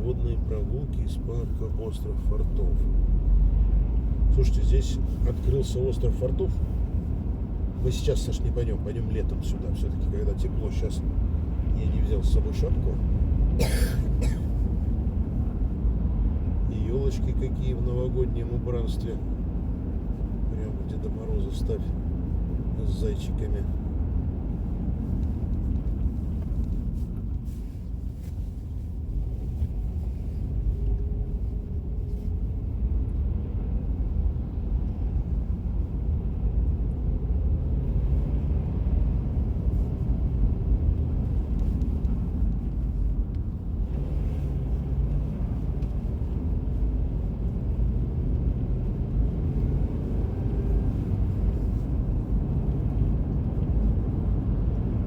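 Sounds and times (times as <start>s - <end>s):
road and engine rumble in car: 0.0s - 55.0s.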